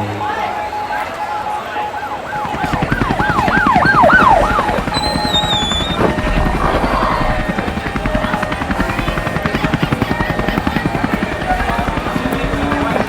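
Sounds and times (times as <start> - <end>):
emergency siren yelping: 0.0 - 13.0
helicopter rotor chop: 0.2 - 13.0
high warbling tone: 2.6 - 7.8.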